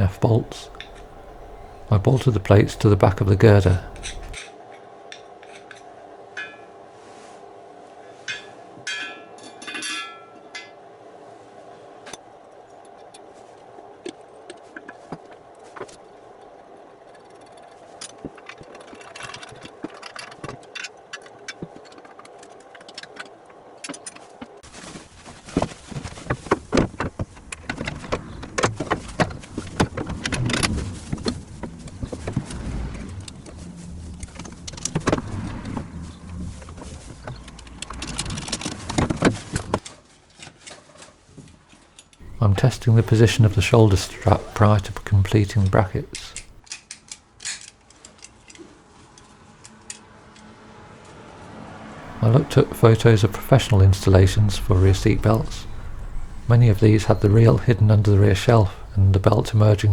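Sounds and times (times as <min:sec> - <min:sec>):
steady hum: 0:00.0 - 0:04.4, 0:42.2 - 0:46.6, 0:52.1 - 0:59.9.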